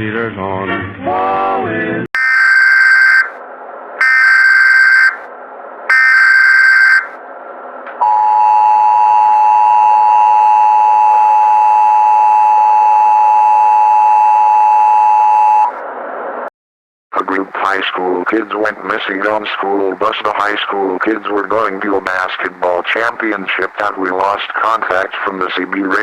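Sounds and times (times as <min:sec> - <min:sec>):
steady two-tone attention signal: 0:02.2 - 0:03.3, 0:04.0 - 0:05.2, 0:05.9 - 0:07.1
buzzy data bursts: 0:05.9 - 0:07.1.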